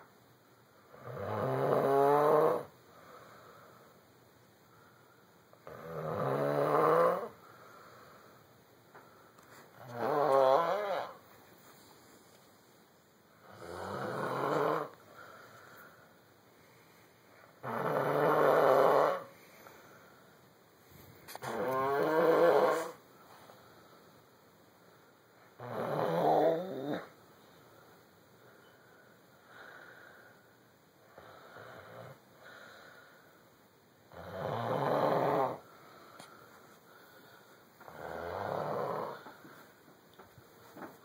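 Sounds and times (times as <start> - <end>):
faint snoring breaths: 0.8 - 4.0, 4.8 - 11.2, 13.4 - 20.3, 21.2 - 24.0, 25.5 - 27.2, 29.0 - 33.4, 34.1 - 39.8
loud snoring: 0.9 - 2.7, 5.6 - 7.4, 9.8 - 11.2, 13.4 - 15.0, 17.6 - 19.3, 21.4 - 23.0, 25.6 - 27.1, 31.2 - 32.2, 34.1 - 35.7, 37.8 - 39.4.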